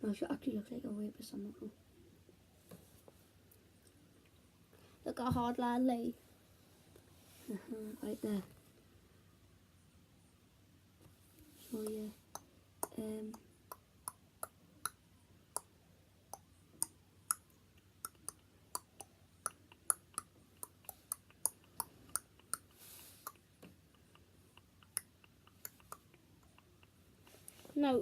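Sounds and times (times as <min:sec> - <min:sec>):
fingers tapping touchscreen: 0:11.8 - 0:15.7, 0:16.3 - 0:27.5.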